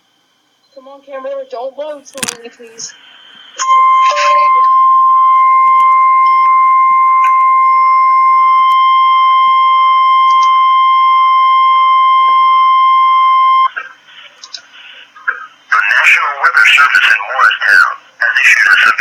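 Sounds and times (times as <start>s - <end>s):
steady alert tone beep: 3.6s - 13.7s.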